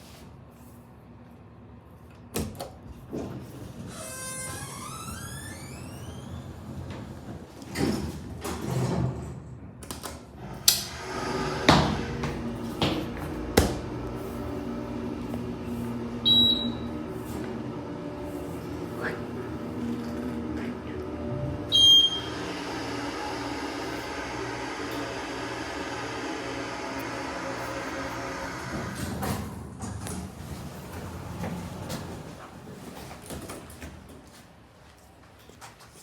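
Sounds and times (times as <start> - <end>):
steady elevator hum: 2.8 - 35.2
elevator doors sliding: 3.0 - 34.1
elevator chime with rising tones: 16.2 - 17.1, 21.4 - 22.7
short high beep: 16.3 - 16.8, 21.7 - 22.3.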